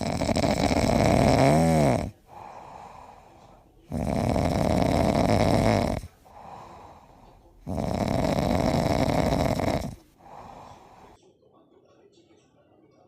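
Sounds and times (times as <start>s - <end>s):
person snoring: 0.0s - 11.2s
soft breath out: 2.1s - 4.0s, 6.0s - 7.9s, 9.9s - 11.2s.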